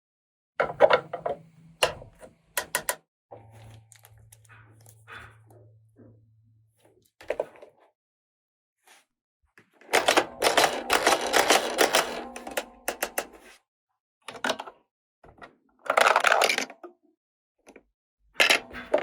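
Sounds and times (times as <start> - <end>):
plastic pieces clicking: 3.7 - 5.0, 10.0 - 13.3, 15.9 - 16.8.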